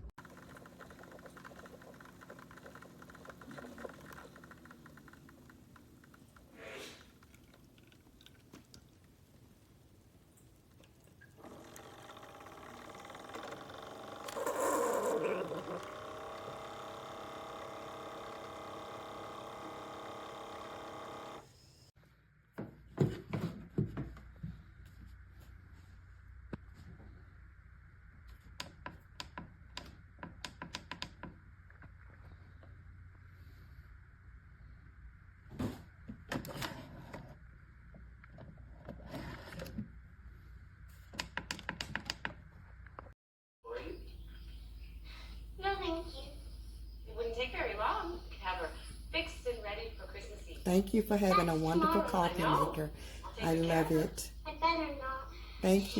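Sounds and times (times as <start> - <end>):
coffee maker humming: 0.0 - 8.4, 11.3 - 21.9, 47.8 - 55.0, 55.6 - 55.9.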